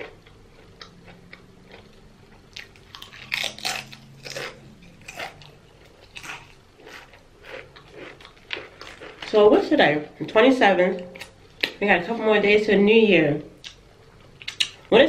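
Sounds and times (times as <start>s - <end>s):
person chewing crunchy food: 0.0s - 9.4s.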